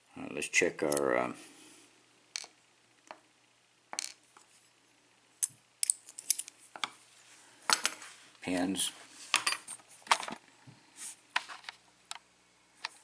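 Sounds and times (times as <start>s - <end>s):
small metal pins clicking: 5.4s - 6.6s.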